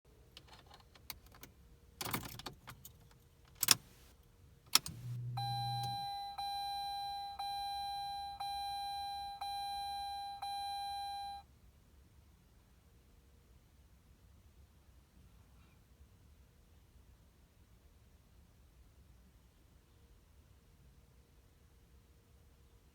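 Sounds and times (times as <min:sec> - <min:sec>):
car keys jingling: 0:03.5 - 0:04.1, 0:04.8 - 0:11.4
brief low hum: 0:04.8 - 0:11.4
car warning chime dinging: 0:04.8 - 0:11.4.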